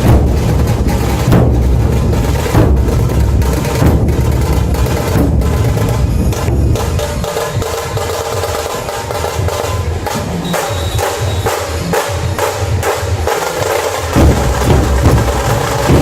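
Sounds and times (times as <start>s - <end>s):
barrel drums beating: 0.0s - 16.0s
sharp tasha drum strokes: 0.0s - 16.0s.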